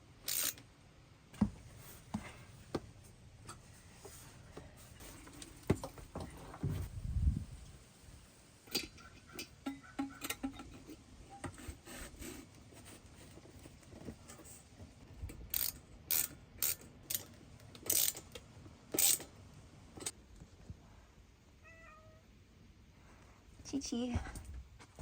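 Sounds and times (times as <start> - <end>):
cat meow: 21.6 - 22.3.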